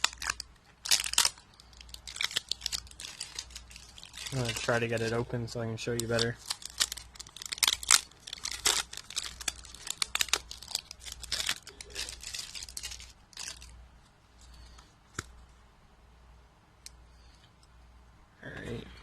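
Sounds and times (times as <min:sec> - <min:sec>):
plastic packaging crinkling and tearing: 0:00.0 - 0:13.8.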